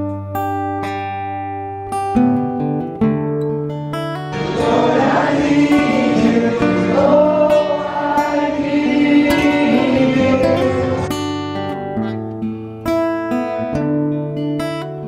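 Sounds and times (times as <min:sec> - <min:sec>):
acoustic guitar: 0:00.0 - 0:15.0
group of voices singing: 0:04.3 - 0:11.2.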